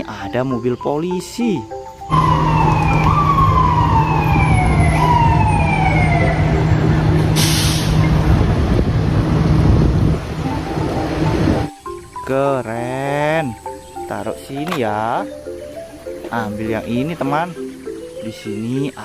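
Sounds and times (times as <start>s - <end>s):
police siren wailing: 2.1s - 9.4s
engine hum: 2.1s - 11.8s.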